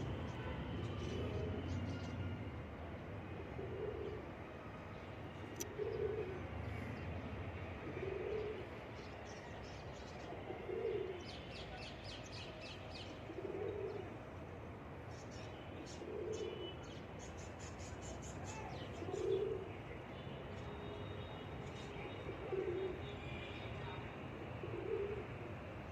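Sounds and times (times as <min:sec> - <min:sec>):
pigeons cooing: 0:03.5 - 0:04.3, 0:05.7 - 0:06.5, 0:07.8 - 0:08.7, 0:10.5 - 0:11.3, 0:13.2 - 0:14.2, 0:15.9 - 0:16.7, 0:19.0 - 0:19.7, 0:22.3 - 0:23.0, 0:24.6 - 0:25.4.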